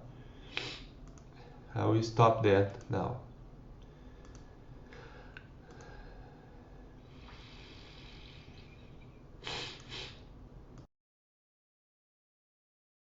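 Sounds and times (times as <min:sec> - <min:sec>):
faint clicks: 0:01.0 - 0:01.3, 0:03.8 - 0:06.0.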